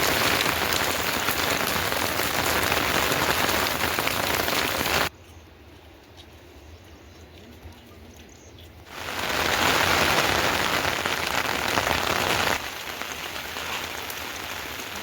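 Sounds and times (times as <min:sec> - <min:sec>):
heavy rain falling: 0:00.0 - 0:05.1, 0:08.9 - 0:15.0.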